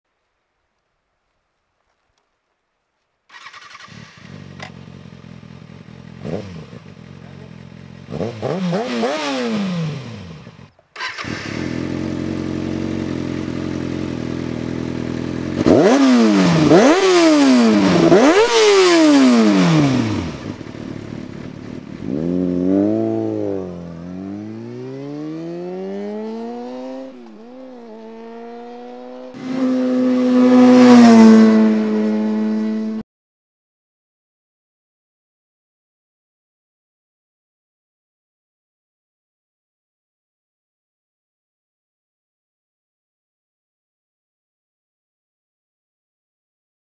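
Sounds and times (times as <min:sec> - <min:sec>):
motorcycle engine revving: 0:03.3 - 0:33.0.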